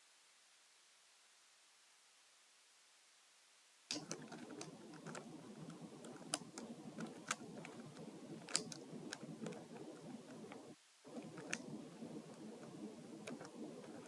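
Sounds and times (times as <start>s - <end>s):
plastic cube clicks: 3.9s - 14.0s.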